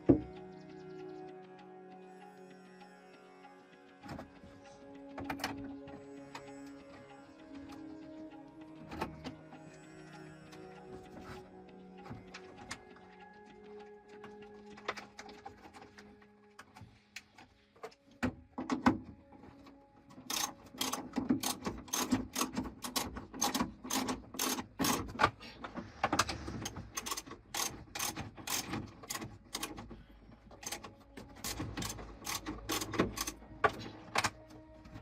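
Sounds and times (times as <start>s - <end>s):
metal tools clicking and knocking: 30.6s - 34.5s.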